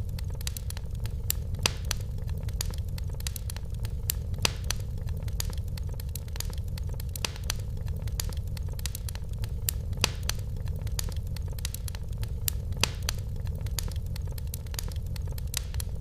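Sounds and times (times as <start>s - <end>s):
fireplace fire crackling: 0.0s - 16.0s.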